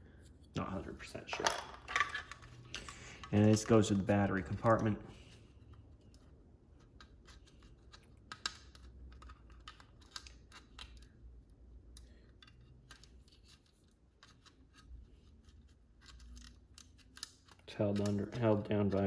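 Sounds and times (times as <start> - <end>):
plastic and metal parts clicking: 6.0 - 11.2, 11.9 - 19.0.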